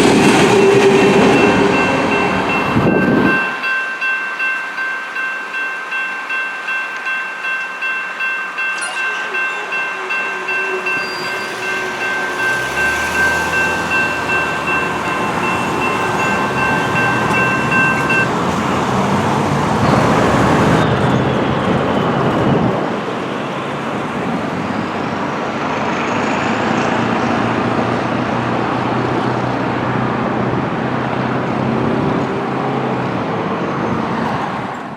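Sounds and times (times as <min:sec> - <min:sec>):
vehicles passing: 0:00.0 - 0:03.5, 0:09.4 - 0:34.9
railroad crossing bells ringing: 0:00.0 - 0:25.6.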